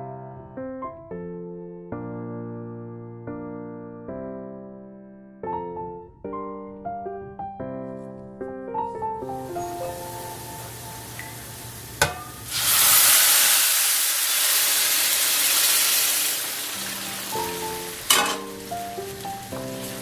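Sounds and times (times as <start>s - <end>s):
soft piano music: 0.0s - 12.8s, 16.4s - 20.0s
food sizzling in oil: 9.4s - 20.0s.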